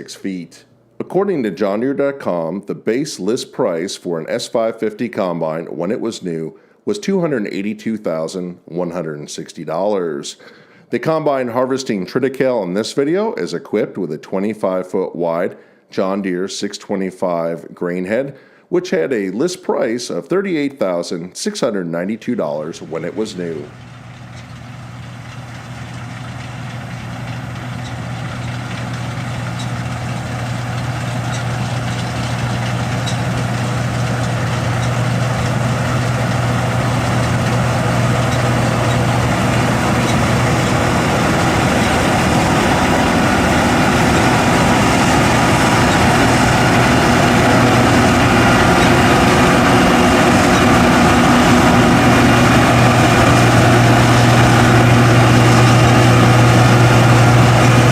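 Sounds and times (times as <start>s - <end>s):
diesel engine humming: 22.8s - 57.9s
harvesting machinery noise: 22.8s - 57.9s.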